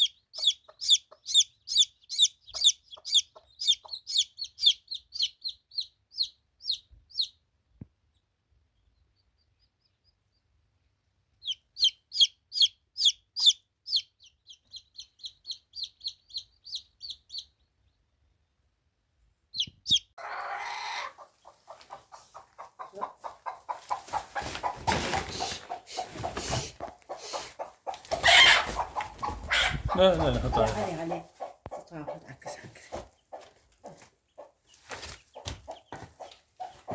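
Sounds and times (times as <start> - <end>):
chickens clucking: 0.0 - 5.4, 19.6 - 36.9
chicks peeping: 0.0 - 18.6, 19.5 - 36.9
rustling: 23.7 - 29.5.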